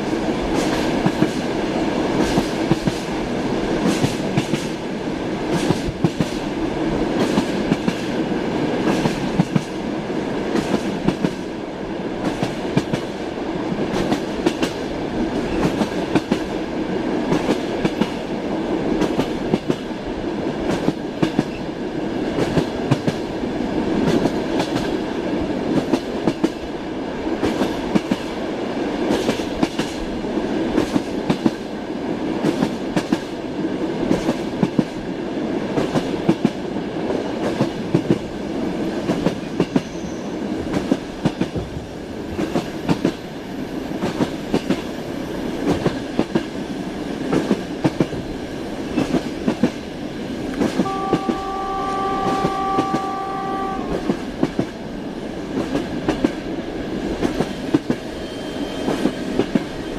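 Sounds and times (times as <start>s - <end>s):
train wheels clacking on rails: 0.0s - 26.7s, 27.3s - 59.9s
train rumble: 0.0s - 59.9s
train horn: 50.8s - 54.2s.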